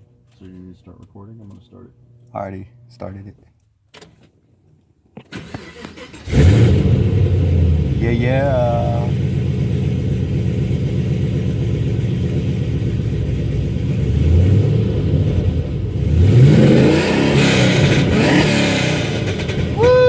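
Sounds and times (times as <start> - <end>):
car engine idling and revving: 5.4 - 20.0.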